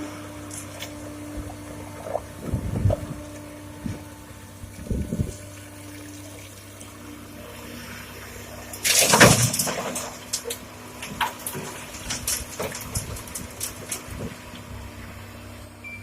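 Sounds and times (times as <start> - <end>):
excavator diesel engine running: 0.0 - 16.0
stones dumped into truck bed: 8.8 - 14.4.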